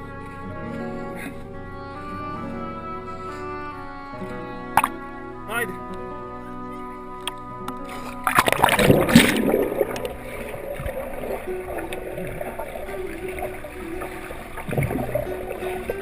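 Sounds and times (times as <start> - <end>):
water sloshing and gurgling: 7.2 - 16.0
person splashing into pond: 8.2 - 16.0.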